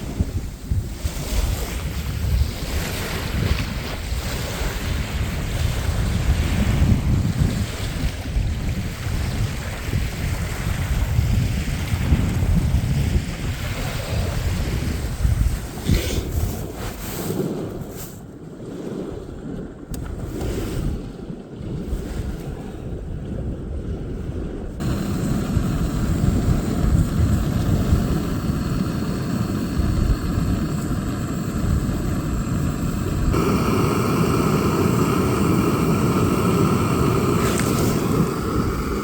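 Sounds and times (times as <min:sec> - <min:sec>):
wind buffeting microphone: 0:00.0 - 0:39.0.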